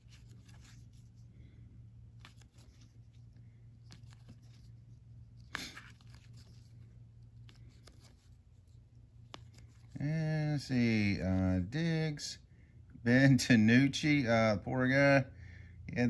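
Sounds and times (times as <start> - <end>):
cards flipped by hand: 0.0 - 1.2, 2.1 - 10.0.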